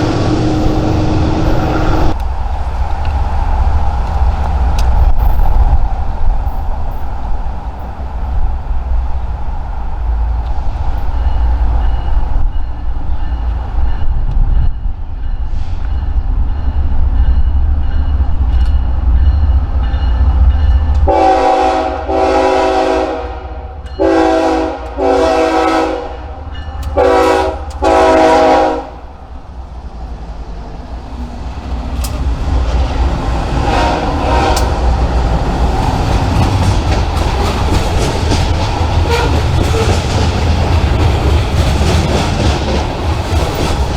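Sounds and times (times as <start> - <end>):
train air horn blasts: 0.0 - 2.2, 21.1 - 26.4, 27.0 - 29.1, 33.6 - 34.9, 38.9 - 40.2
train wheels clickety-clack: 0.0 - 21.7, 23.8 - 28.8, 30.0 - 43.9
diesel locomotive rumbling: 0.0 - 43.9.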